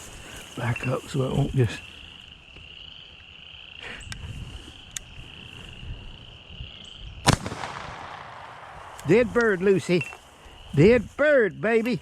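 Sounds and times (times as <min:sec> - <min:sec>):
high insect trill: 0:00.0 - 0:12.0
shotgun shot with echo: 0:07.2 - 0:09.1.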